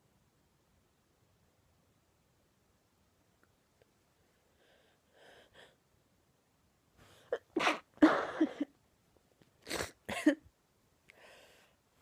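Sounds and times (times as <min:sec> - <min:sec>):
faint breaths: 0:04.1 - 0:05.9, 0:11.1 - 0:12.0
woman sneezing: 0:07.4 - 0:08.7.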